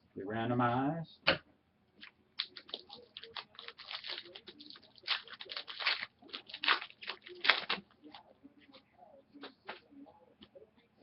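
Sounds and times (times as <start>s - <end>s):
plastic packaging crinkling: 2.4s - 8.3s.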